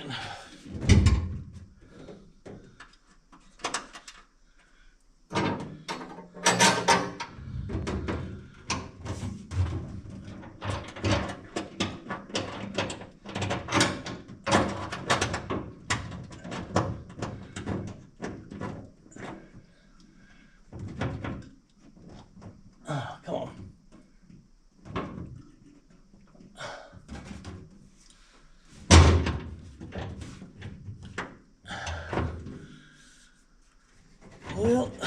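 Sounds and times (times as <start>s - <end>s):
metal hardware clicking and clunking: 5.3s - 8.9s.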